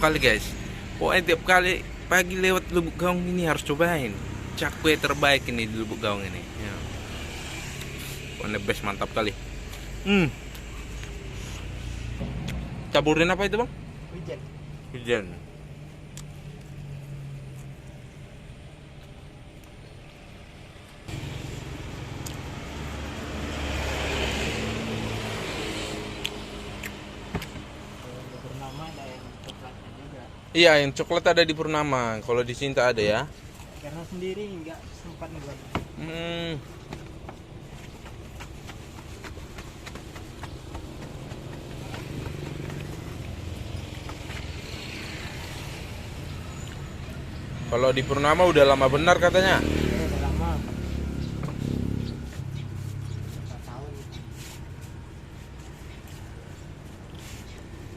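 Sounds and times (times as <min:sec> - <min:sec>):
vehicle passing by: 0:03.5 - 0:15.2, 0:21.1 - 0:29.3, 0:34.3 - 0:57.9.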